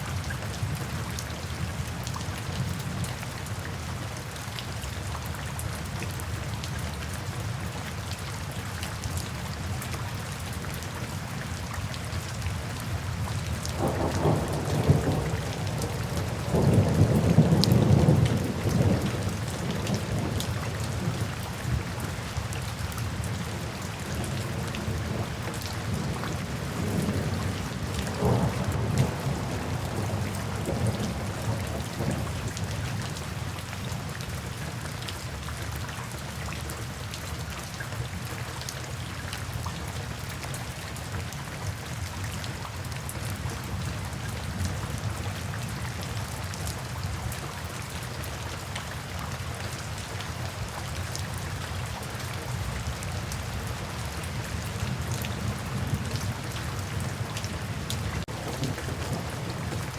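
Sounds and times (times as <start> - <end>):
steady rain: 0.0 - 59.9
thunder rumbling: 13.8 - 21.2, 24.9 - 32.4, 58.2 - 59.9.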